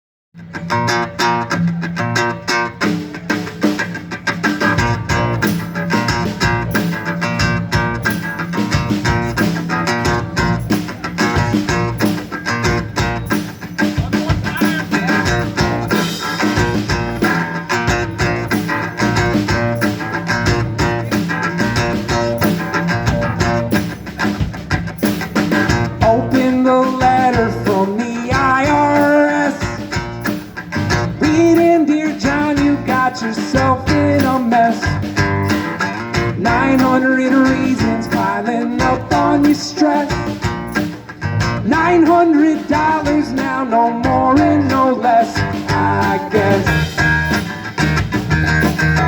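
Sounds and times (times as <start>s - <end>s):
bass guitar: 0.4s - 49.0s
electric guitar: 0.4s - 49.0s
steady drum beat: 2.7s - 49.0s.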